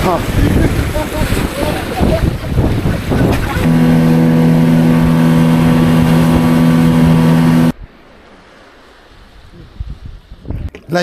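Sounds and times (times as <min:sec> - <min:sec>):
loud steady motor drone: 0:03.6 - 0:07.7
rough noise: 0:03.6 - 0:07.8.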